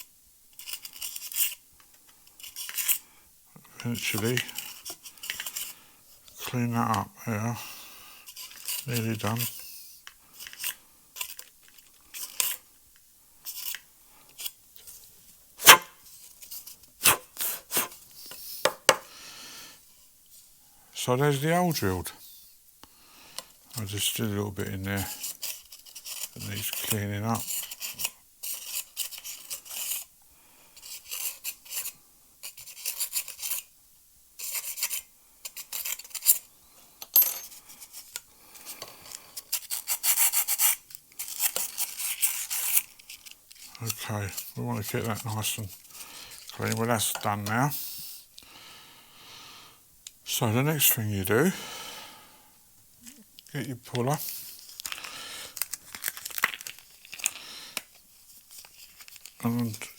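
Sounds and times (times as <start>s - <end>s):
hand rasping edge of hole: 15.6s - 15.9s
sandpaper scraping: 15.6s - 15.9s, 17.0s - 18.0s, 30.8s - 33.7s, 34.4s - 36.4s, 39.4s - 46.9s.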